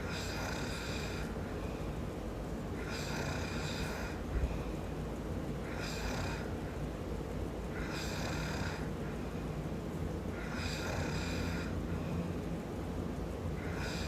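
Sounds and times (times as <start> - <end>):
man snoring: 0.0 - 1.3, 2.8 - 4.2, 5.6 - 6.5, 7.8 - 8.9, 10.3 - 11.8, 13.6 - 14.0
steady low rumble: 0.0 - 14.0.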